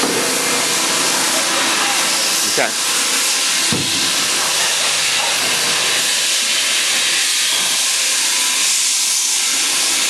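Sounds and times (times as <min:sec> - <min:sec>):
machine shop hiss: 0:00.0 - 0:10.0.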